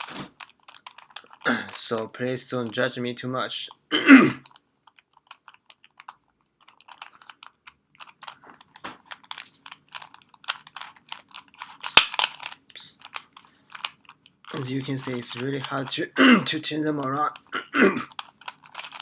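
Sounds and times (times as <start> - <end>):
plastic puzzle cube clicking: 0.0 - 2.1, 4.4 - 16.0, 18.1 - 19.0
sharp plastic crack: 0.0 - 2.1, 6.8 - 15.9, 18.0 - 19.0.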